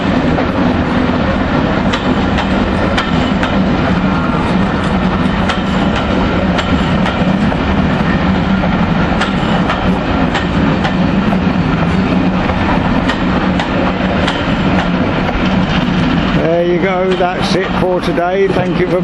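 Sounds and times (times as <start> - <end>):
train rumbling on rails: 0.0 - 19.0
wheels clicking on track: 0.0 - 19.0.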